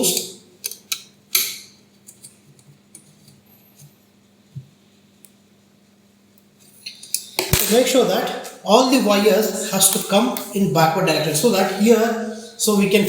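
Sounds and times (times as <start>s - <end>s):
low steady hum: 0.0s - 13.0s.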